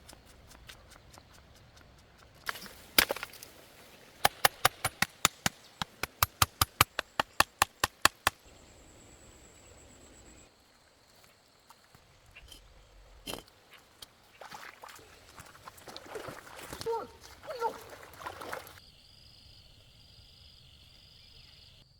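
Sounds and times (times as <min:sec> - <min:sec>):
sharp chopping strikes: 0:04.2 - 0:08.4.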